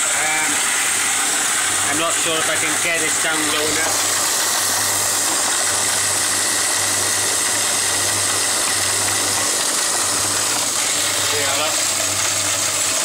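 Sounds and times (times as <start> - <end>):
feed mill grinding: 0.0 - 13.0.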